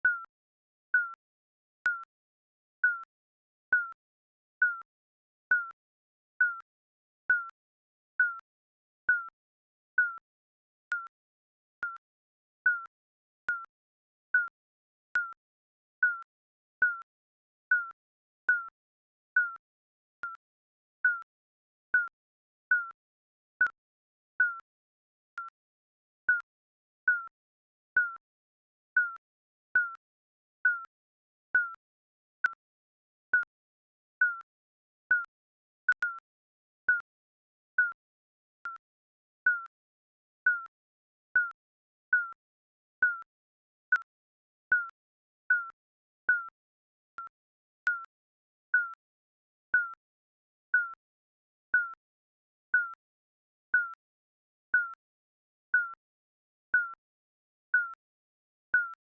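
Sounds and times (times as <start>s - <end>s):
timer beeps: 0.0s - 0.3s, 1.0s - 1.2s, 1.9s - 2.1s, 2.8s - 3.1s, 3.7s - 4.0s, 4.6s - 4.9s, 5.5s - 5.8s, 6.4s - 6.7s, 7.3s - 7.6s, 8.2s - 8.5s, 9.1s - 9.4s, 10.0s - 10.2s, 10.9s - 11.2s, 11.8s - 12.0s, 12.7s - 12.9s, 13.5s - 13.7s, 14.4s - 14.6s, 15.2s - 15.4s, 16.0s - 17.1s, 17.7s - 18.8s, 19.4s - 19.6s, 20.2s - 21.3s, 21.9s - 23.0s, 23.6s - 23.8s, 24.4s - 24.7s, 25.3s - 25.6s, 26.3s - 26.5s, 27.1s - 27.4s, 28.0s - 28.2s, 28.9s - 29.2s, 29.8s - 30.0s, 30.6s - 30.9s, 31.6s - 31.8s, 32.4s - 32.7s, 33.3s - 33.6s, 34.2s - 34.5s, 35.1s - 35.3s, 35.9s - 36.2s, 36.8s - 37.1s, 37.8s - 38.0s, 38.6s - 38.8s, 39.5s - 39.7s, 40.4s - 40.7s, 41.4s - 42.4s, 43.0s - 44.1s, 44.7s - 48.1s, 48.8s - 49.0s, 49.8s - 50.0s, 50.8s - 51.0s, 51.8s - 52.0s, 52.8s - 53.0s, 53.8s - 54.0s, 54.8s - 55.0s, 55.8s - 56.0s, 56.7s - 57.0s, 57.8s - 58.0s, 58.8s - 59.0s.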